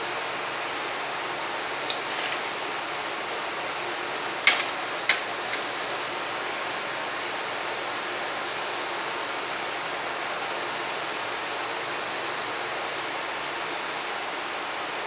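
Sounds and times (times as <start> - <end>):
kitchen clicks and taps: 3.7 - 5.7.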